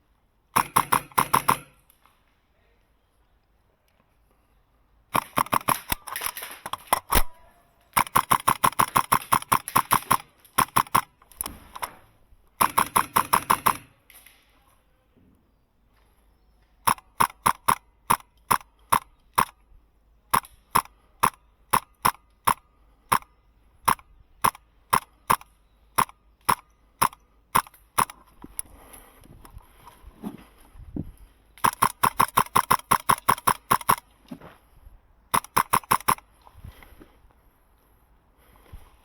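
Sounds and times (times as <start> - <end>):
airsoft rifle shots: 0.5 - 1.8, 5.1 - 14.3, 16.8 - 19.6, 20.3 - 28.2, 31.6 - 34.0, 35.3 - 36.2.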